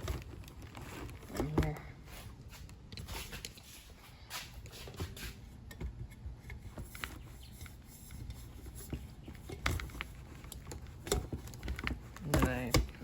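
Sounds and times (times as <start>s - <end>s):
hands clicking and tapping parts: 4.6s - 13.0s.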